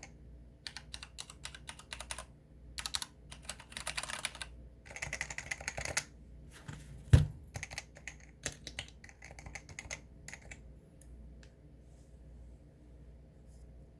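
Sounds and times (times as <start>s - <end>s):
keyboard keystrokes: 0.7s - 6.1s, 7.5s - 10.6s
heavy thump: 7.1s - 7.4s.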